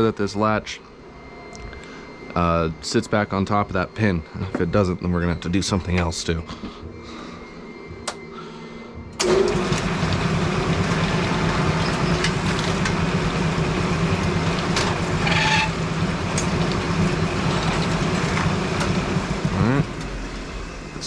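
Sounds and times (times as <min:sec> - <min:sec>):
motor and gearbox humming: 0:09.0 - 0:21.0.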